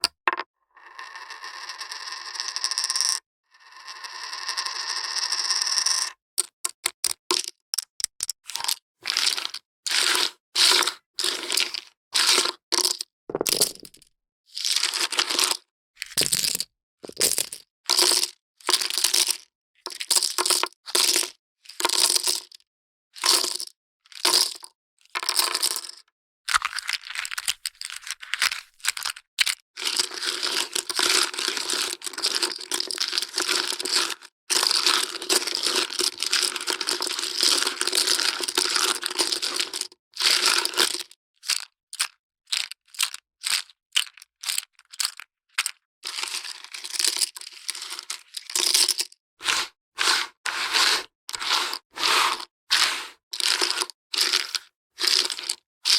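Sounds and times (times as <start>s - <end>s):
poker chips clattering: 12.8s - 14.0s, 16.0s - 17.6s, 25.5s - 29.6s, 51.4s - 55.6s.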